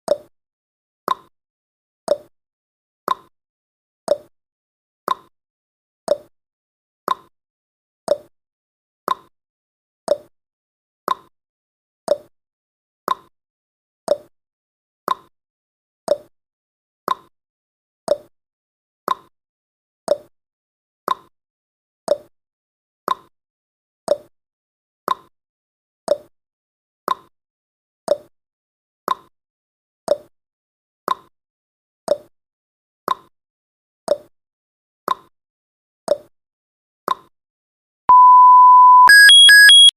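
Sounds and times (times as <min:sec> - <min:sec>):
timer ticking: 0:38.1 - 0:39.9.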